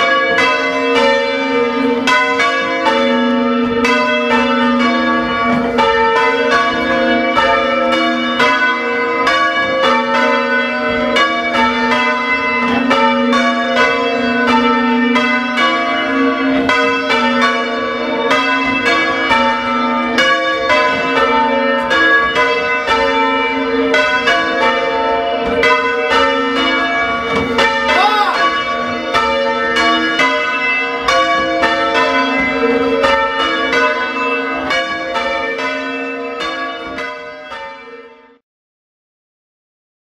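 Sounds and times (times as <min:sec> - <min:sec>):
church bells ringing: 0:00.0 - 0:38.4.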